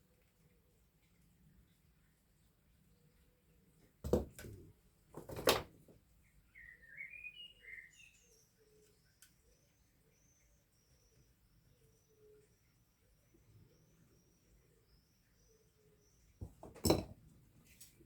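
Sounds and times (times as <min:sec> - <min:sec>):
bird singing: 0:06.3 - 0:16.4
faint high chirp: 0:06.5 - 0:16.4
clattering knocks: 0:16.4 - 0:17.2.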